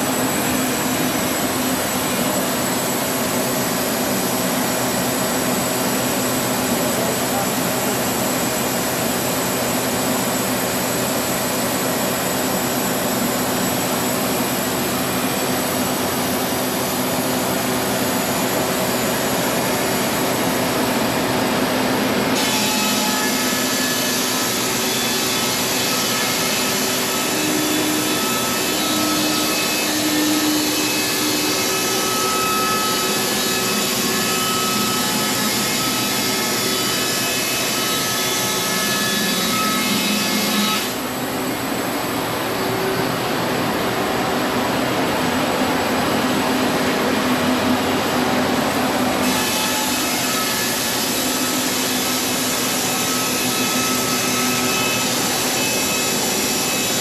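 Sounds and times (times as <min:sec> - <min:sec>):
sawmill blade cutting wood: 0:22.3 - 0:41.1, 0:49.1 - 0:57.0.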